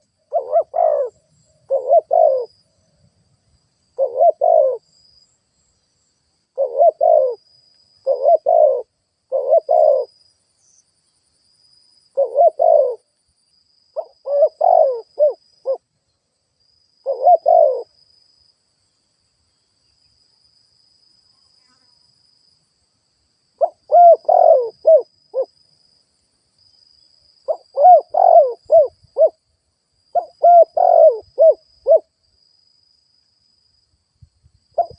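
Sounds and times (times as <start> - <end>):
dove cooing: 0.0 - 2.6, 4.0 - 4.8, 6.6 - 7.4, 8.0 - 10.1, 12.1 - 13.1, 14.0 - 15.8, 17.0 - 17.9, 23.6 - 25.5, 27.5 - 29.4, 30.2 - 32.1.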